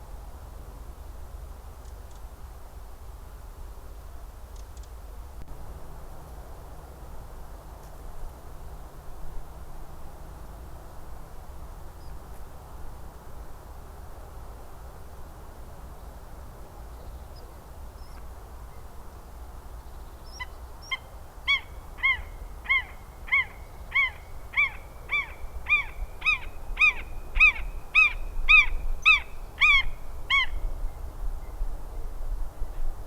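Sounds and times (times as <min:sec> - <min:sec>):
bird calling clear notes: 0:20.3 - 0:30.6.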